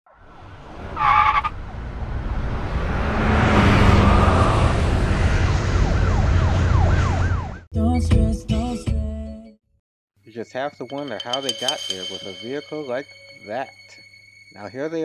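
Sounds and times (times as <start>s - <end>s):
vehicle and road rumble: 0.2s - 7.5s.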